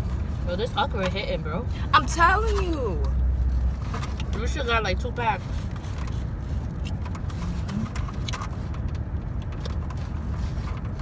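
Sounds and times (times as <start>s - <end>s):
car cabin rumble: 0.0s - 11.0s
food containers clicking and rustling: 2.5s - 4.4s, 5.6s - 11.0s.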